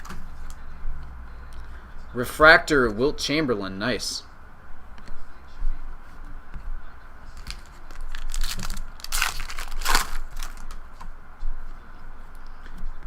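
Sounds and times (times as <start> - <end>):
card packaging crinkling: 7.3 - 10.8.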